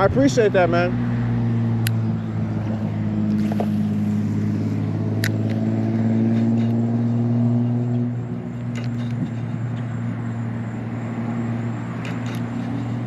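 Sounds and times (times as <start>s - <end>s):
car engine running: 0.0s - 13.0s
sharp clicks: 5.2s - 5.6s, 12.0s - 12.6s.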